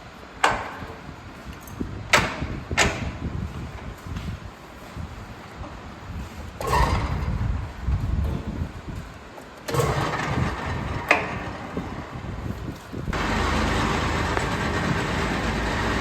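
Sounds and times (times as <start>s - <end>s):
metal lathe running: 13.2s - 16.0s.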